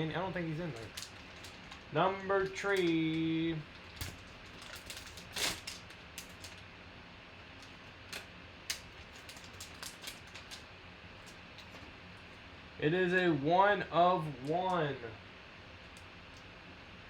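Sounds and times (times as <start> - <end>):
card pack rustling and clicking: 0.4 - 6.6, 7.6 - 10.6.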